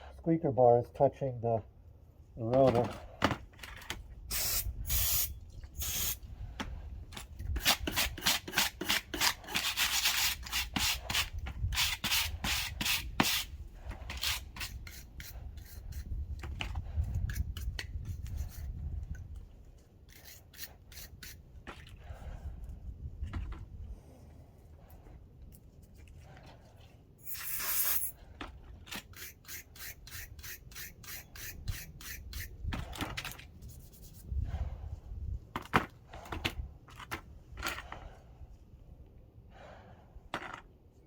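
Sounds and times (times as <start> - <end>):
quick scraping strokes on metal: 27.2 - 28.2, 29.0 - 32.6.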